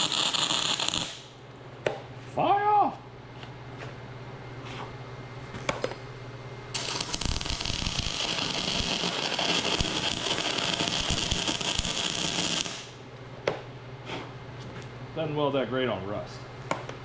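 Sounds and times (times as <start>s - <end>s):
welding arc crackling: 0.0s - 1.4s, 6.8s - 13.0s
low machine hum: 1.2s - 17.0s.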